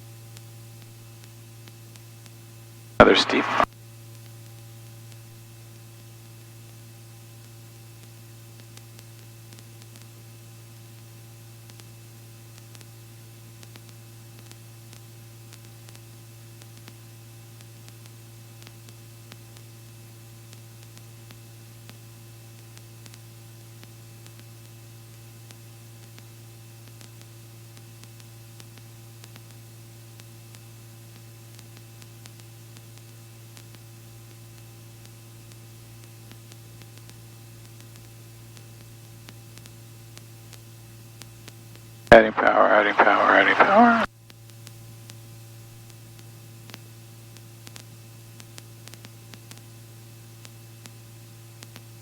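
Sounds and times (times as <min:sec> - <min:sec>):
muffled helicopter drone: 0:03.0 - 0:03.6, 0:42.1 - 0:44.0
intercom hum with hiss: 0:03.0 - 0:03.7, 0:42.1 - 0:44.1.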